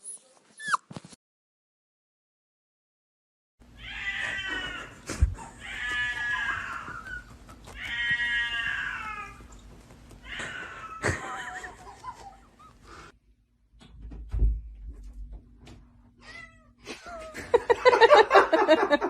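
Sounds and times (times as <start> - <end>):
cat meowing: 3.8 - 5.0, 5.6 - 9.5, 10.2 - 11.7.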